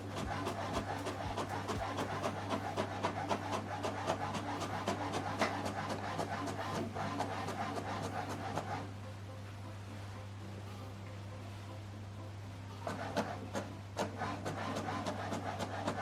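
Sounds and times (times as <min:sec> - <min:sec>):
inkjet printer clicking and whirring: 0:00.0 - 0:08.9, 0:12.8 - 0:16.0.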